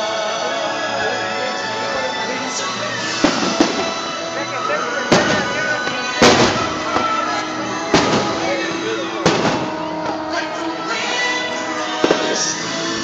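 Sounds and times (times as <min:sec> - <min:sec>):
music playing: 0:00.0 - 0:13.0
fireworks bangs: 0:02.6 - 0:13.0.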